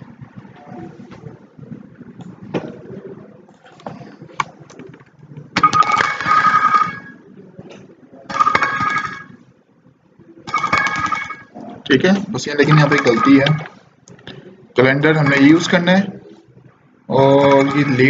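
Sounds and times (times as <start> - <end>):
phone ringtone alarm: 5.6 - 7.2, 8.3 - 9.4, 10.5 - 11.6, 12.6 - 13.8, 15.0 - 16.0, 17.3 - 18.0.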